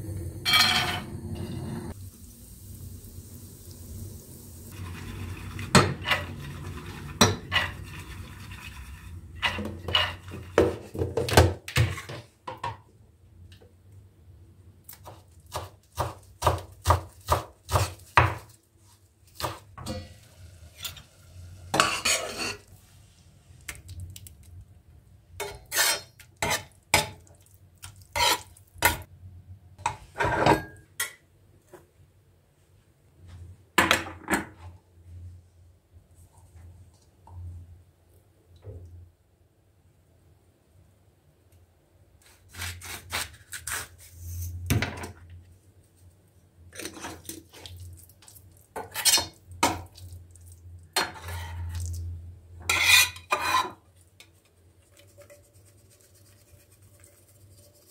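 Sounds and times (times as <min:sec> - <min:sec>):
steady hiss: 0:01.1 - 0:05.2
cutlery and cookware clinking: 0:21.8 - 0:22.6, 0:29.8 - 0:31.2, 0:52.6 - 0:53.8.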